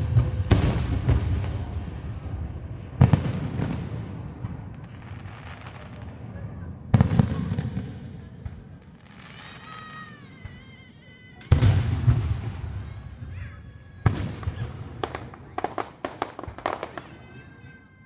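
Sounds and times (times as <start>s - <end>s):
fireworks shells bursting: 9.3s - 18.0s.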